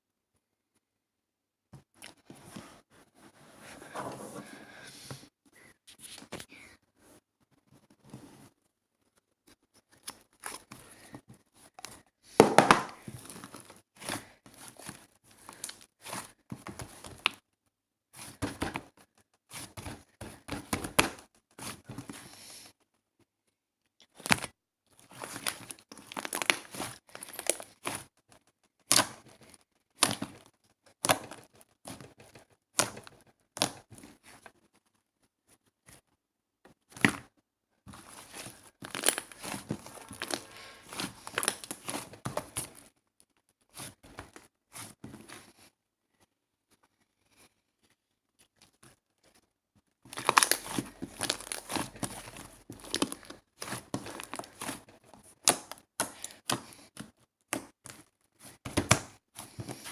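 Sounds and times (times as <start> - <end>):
material crinkling and tearing: 24.1 - 35.0, 37.9 - 45.0, 50.0 - 59.9.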